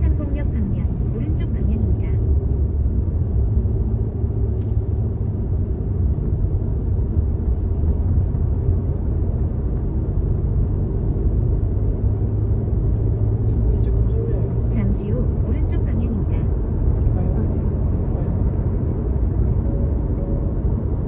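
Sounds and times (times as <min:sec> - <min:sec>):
road and engine rumble in car: 0:00.0 - 0:21.0.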